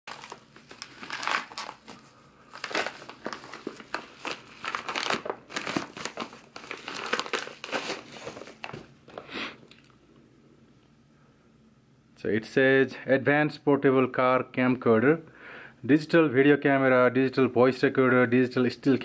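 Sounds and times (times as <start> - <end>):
packaging crinkling: 0.1 - 9.9.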